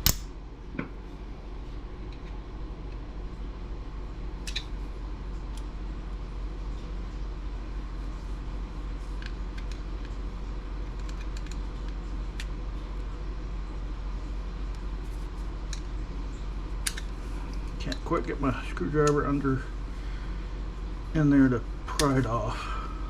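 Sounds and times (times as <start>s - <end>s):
low hum: 0.0s - 23.0s
small lock parts clicking: 10.8s - 12.5s.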